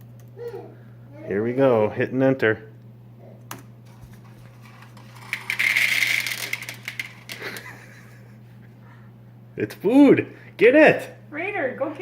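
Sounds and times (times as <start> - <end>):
steady low hum: 0.0 - 12.0
dry cat food rattling: 4.2 - 7.7.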